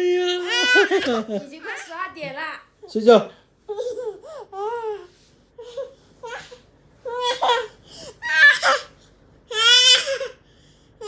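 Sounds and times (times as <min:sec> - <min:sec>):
toddler crying and squealing: 0:05.8 - 0:08.9, 0:09.5 - 0:10.3.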